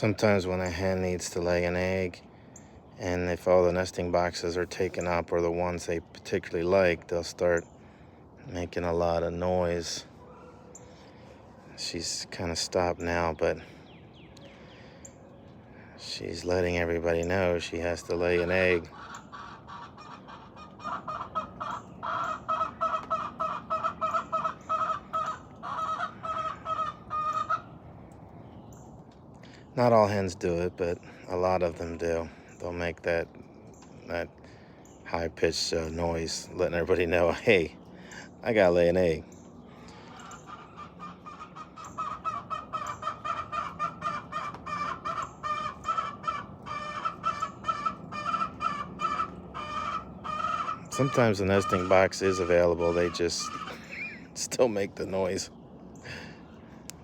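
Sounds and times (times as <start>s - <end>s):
hen honking calls: 15.8s - 27.9s, 35.8s - 56.9s.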